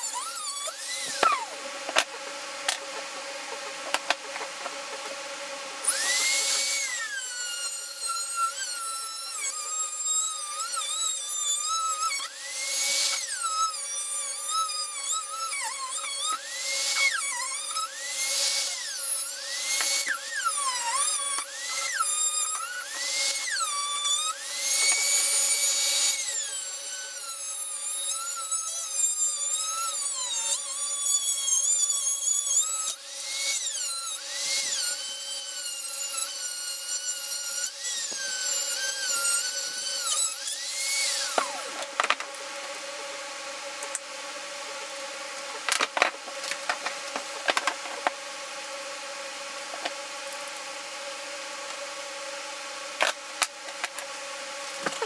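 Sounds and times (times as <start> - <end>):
rotary tool whining: 0.0 - 42.8.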